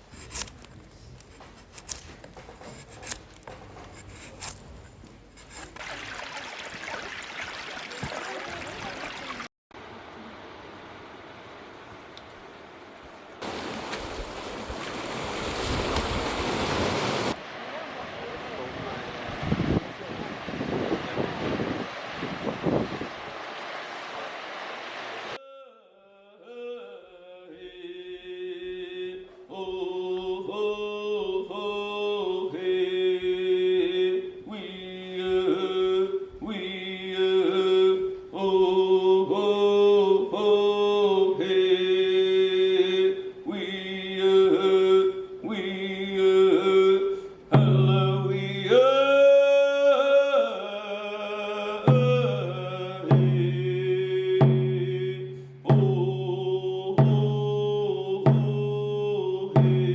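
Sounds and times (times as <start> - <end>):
chant-like singing: 25.3 - 59.9.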